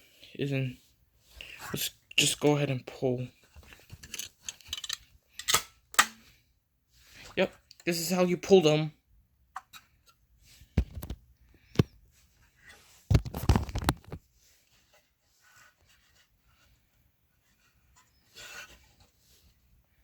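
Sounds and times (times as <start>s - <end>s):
soft rustle: 11.5s - 20.0s.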